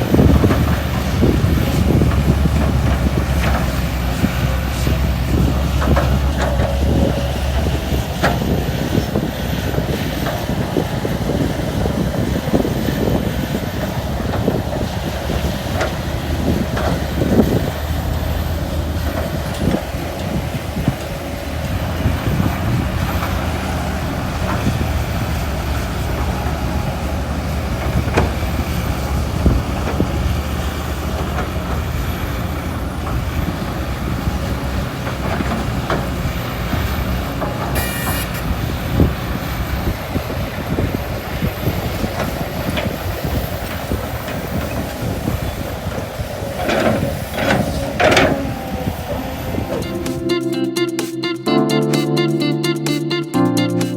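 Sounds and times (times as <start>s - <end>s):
machinery knocks and clanks: 0.0s - 49.9s
heavy diesel engine drone: 0.0s - 53.9s.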